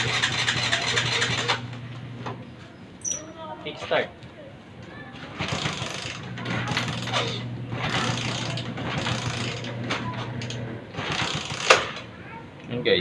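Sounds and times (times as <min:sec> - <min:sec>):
motorcycle starter cranking: 0:00.0 - 0:01.8, 0:05.4 - 0:12.1.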